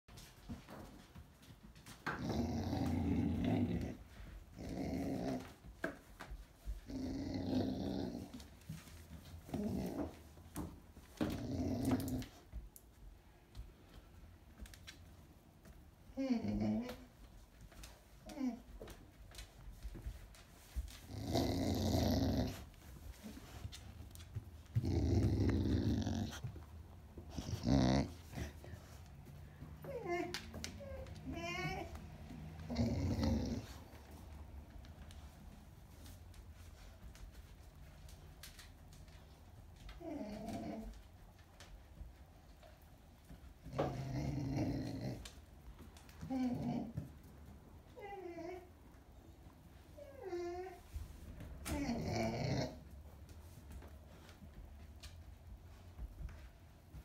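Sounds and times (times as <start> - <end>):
dog growling: 2.0 - 5.6, 6.8 - 8.5, 11.2 - 12.5, 21.0 - 23.6, 24.7 - 28.7, 29.9 - 34.0, 40.0 - 41.0, 43.6 - 45.4, 46.2 - 47.1, 51.6 - 52.9
dog making low noise: 20.7 - 34.4, 39.7 - 41.6, 49.9 - 53.0.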